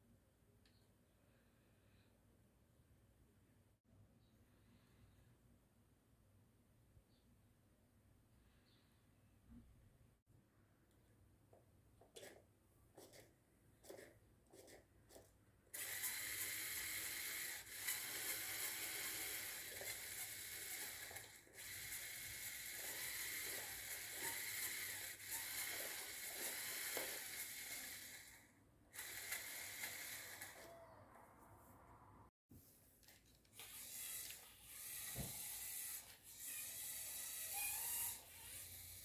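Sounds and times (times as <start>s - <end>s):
toy motors and gears whirring: 13.0s - 31.0s, 33.5s - 39.0s.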